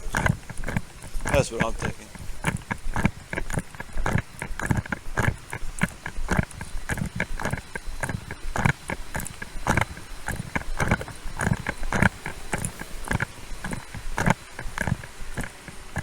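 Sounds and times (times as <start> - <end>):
footsteps walking: 0.0 - 16.0.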